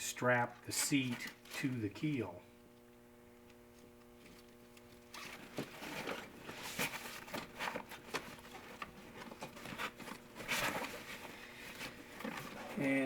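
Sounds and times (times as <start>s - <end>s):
faint steady hum: 0.0s - 13.0s
straps rustling and clicking: 4.2s - 12.9s.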